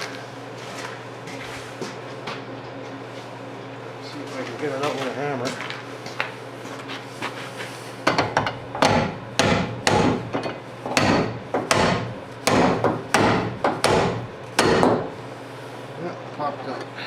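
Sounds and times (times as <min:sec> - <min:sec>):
hammer striking metal hinge pin: 0:08.1 - 0:15.1.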